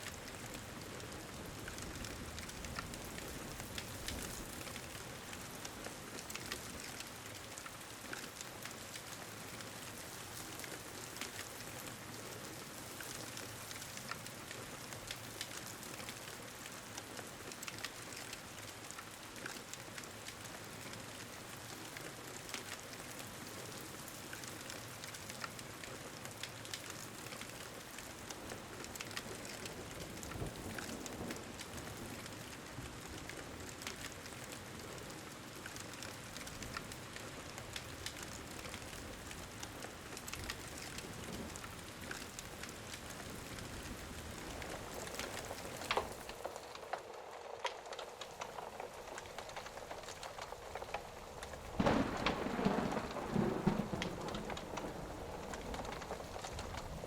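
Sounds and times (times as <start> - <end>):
pouring rain: 0.0 - 57.0
wood fire crackling: 0.0 - 57.0
low rumble of thunder: 49.7 - 57.0.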